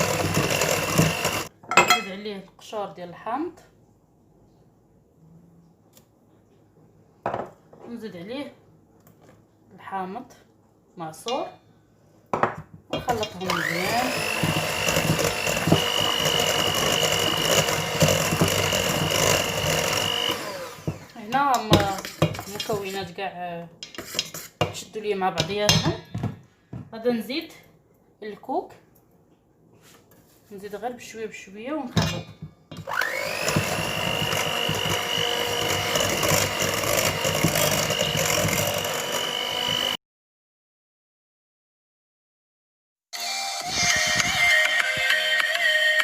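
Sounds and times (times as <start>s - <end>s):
electric hand mixer running: 0.0s - 1.5s, 13.2s - 22.7s, 32.8s - 40.0s.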